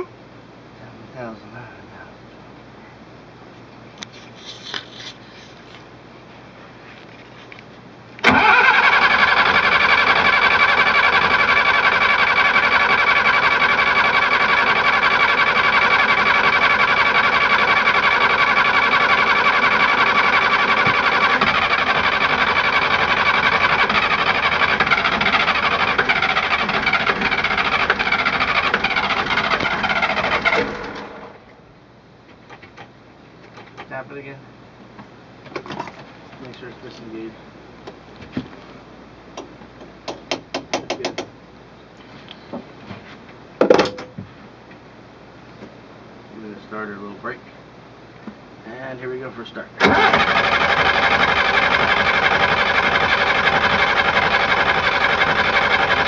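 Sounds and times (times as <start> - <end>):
diesel engine cranking on starter: 8.2 - 31.5, 49.8 - 56.0.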